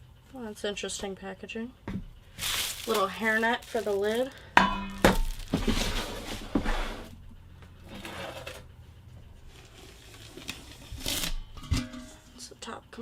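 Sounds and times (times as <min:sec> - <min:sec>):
packaging rustling and crinkling: 0:02.3 - 0:06.8, 0:09.4 - 0:11.4.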